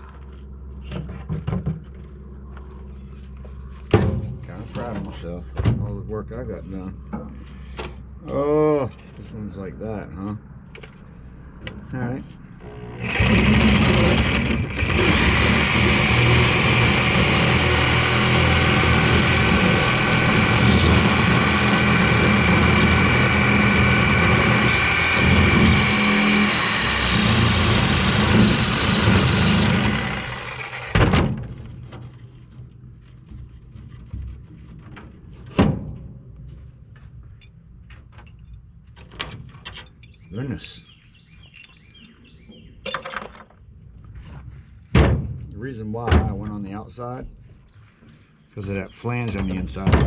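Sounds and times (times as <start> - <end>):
power tool cutting metal: 12.6 - 31.3
thunk: 44.9 - 45.4.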